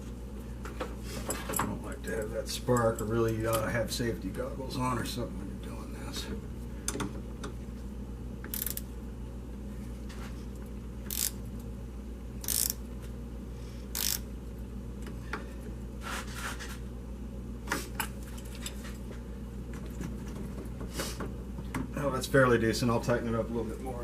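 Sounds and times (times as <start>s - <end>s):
steady low hum: 0.0s - 24.0s
wrench clicking and scraping: 8.5s - 8.9s, 11.1s - 11.4s, 12.4s - 12.8s, 13.9s - 14.2s.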